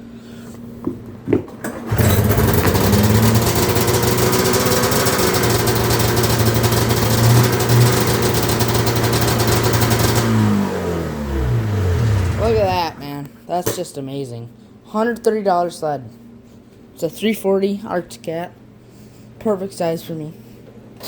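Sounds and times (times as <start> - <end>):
snowmobile engine starting and idling: 1.7 - 13.1.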